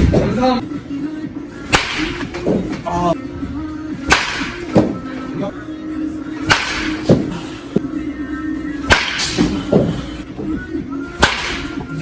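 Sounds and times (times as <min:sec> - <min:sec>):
background music: 0:00.0 - 0:12.0
bat cracking balls: 0:01.6 - 0:02.9, 0:04.0 - 0:05.3, 0:06.3 - 0:07.7, 0:08.8 - 0:10.2, 0:11.1 - 0:12.0.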